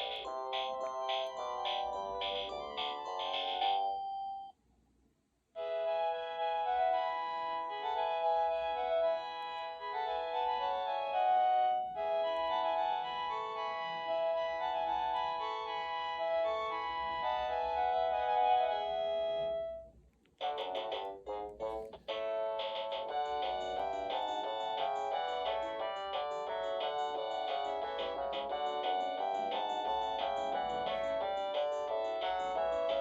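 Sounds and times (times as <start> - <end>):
organ-like phone ringtone: 0.0 - 4.5, 22.6 - 33.0.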